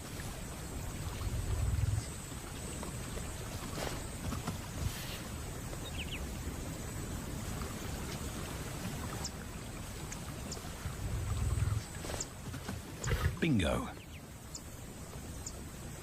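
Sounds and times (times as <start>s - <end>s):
water sloshing and splashing: 0.0s - 13.4s
faint bird chirps: 5.8s - 6.3s.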